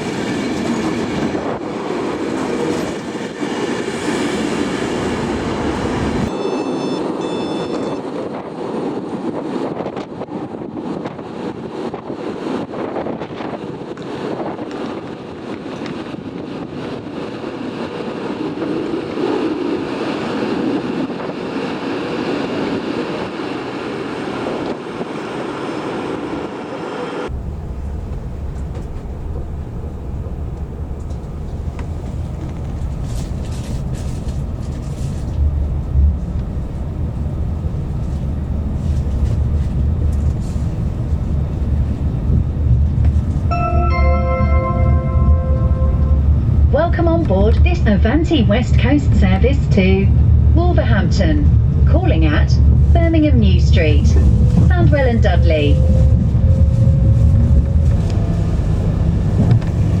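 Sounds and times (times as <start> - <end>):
strong wind buffeting microphone: 0.0 - 6.3, 7.8 - 43.5, 46.0 - 60.0
train rumbling from inside carriage: 0.0 - 60.0.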